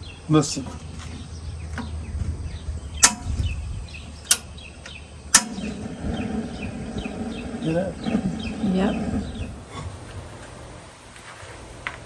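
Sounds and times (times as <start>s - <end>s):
gas burner rushing: 3.0s - 3.4s, 4.3s - 4.5s, 5.3s - 5.8s
gas igniter clicking: 3.0s - 3.4s, 5.4s - 5.8s.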